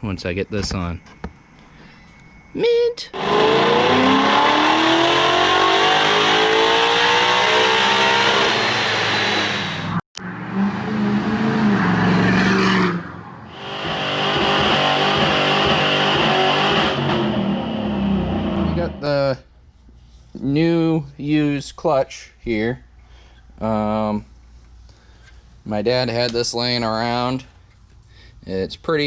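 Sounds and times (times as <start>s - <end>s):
car engine revving: 3.2s - 19.1s.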